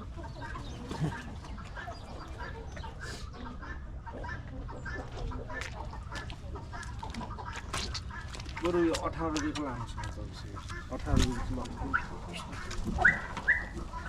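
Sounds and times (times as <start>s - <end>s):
chickens clucking: 0.0s - 14.0s.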